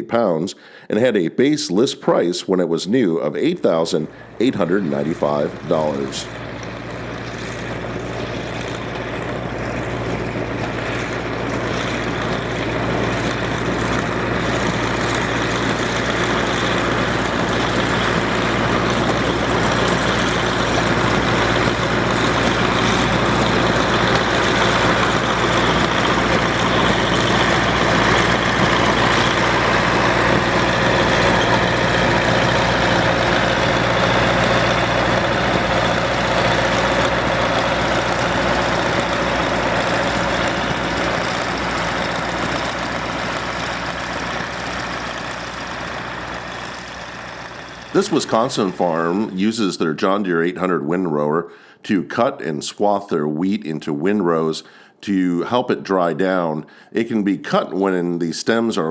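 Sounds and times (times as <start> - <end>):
windrower engine running: 3.7 - 49.4.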